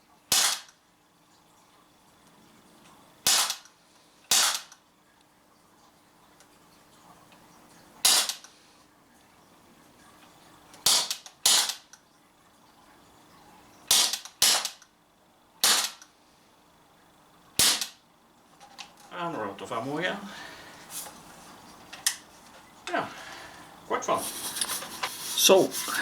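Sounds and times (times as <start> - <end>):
bb gun shots: 0.3 - 0.7, 3.3 - 3.6, 4.3 - 4.7, 8.1 - 8.4, 10.9 - 11.8, 13.9 - 14.8, 15.6 - 16.0, 17.6 - 18.0.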